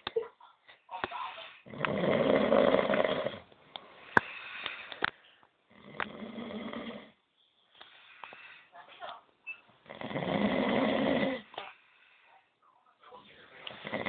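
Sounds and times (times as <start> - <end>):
heavy rattling snoring: 1.6 - 3.5, 5.7 - 7.2, 9.8 - 11.5, 13.8 - 14.0.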